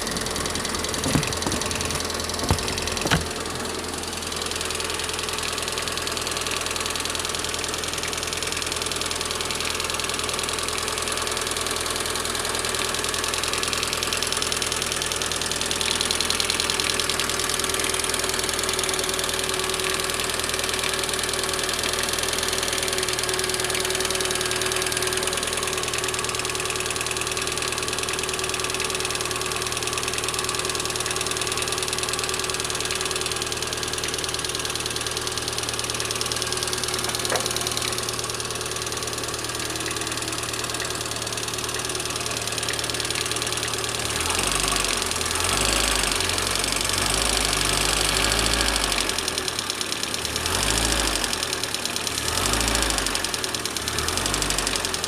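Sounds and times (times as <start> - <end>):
car engine running: 0.0 - 10.9, 29.8 - 55.0
hydraulic lifters tapping: 0.9 - 3.4.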